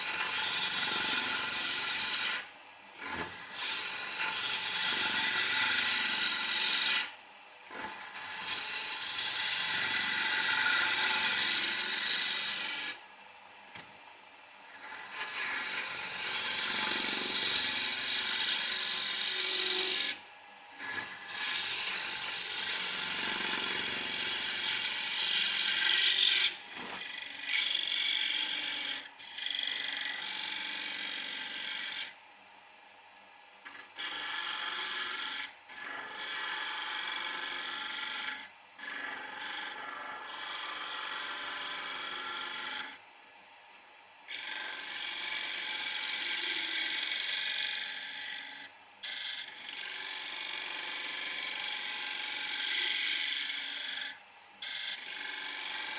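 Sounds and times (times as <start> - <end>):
turning tool cutting wood on lathe: 0.0 - 13.0, 14.7 - 20.2, 20.8 - 32.2, 33.6 - 43.0, 44.3 - 55.9.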